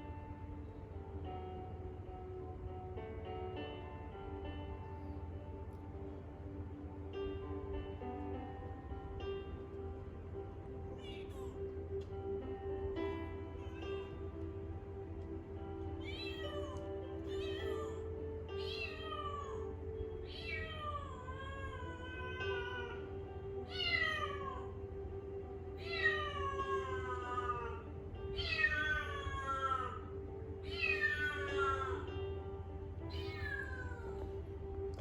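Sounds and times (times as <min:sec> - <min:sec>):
background music: 0:00.0 - 0:35.0
kitten meowing: 0:10.9 - 0:11.6, 0:16.0 - 0:23.0, 0:23.7 - 0:24.7, 0:25.8 - 0:30.0, 0:30.6 - 0:32.1, 0:33.1 - 0:34.4.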